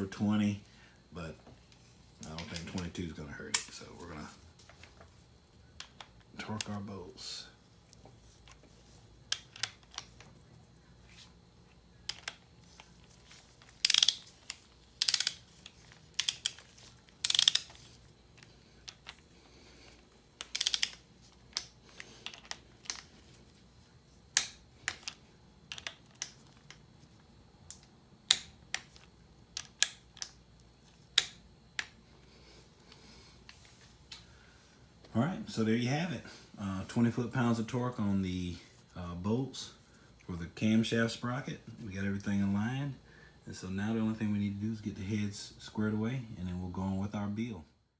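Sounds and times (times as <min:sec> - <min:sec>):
torque wrench ratcheting: 0:13.7 - 0:17.8, 0:20.4 - 0:21.0.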